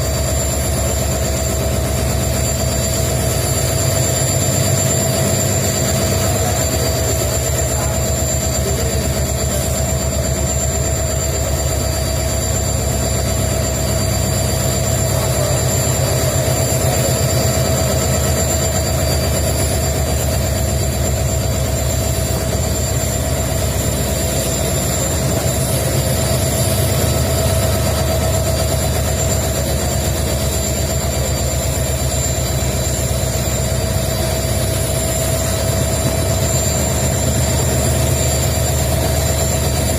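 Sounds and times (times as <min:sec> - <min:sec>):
diesel locomotives idling: 0:00.0 - 0:39.9
steady high whine: 0:00.0 - 0:39.9.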